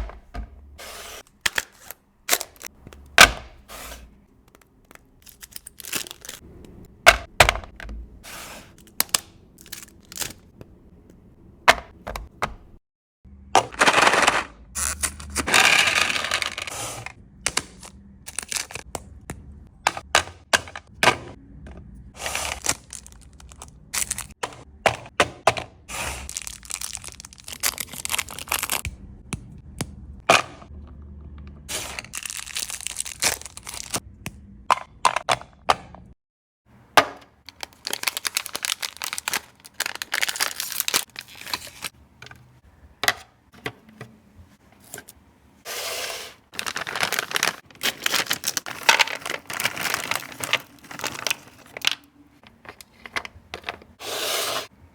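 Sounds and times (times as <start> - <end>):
wrapper crinkling and tearing: 1.3 - 2.7, 4.8 - 6.4, 8.6 - 10.5, 22.3 - 24.3, 26.2 - 28.8, 31.8 - 34.0, 37.4 - 41.9, 46.5 - 53.2.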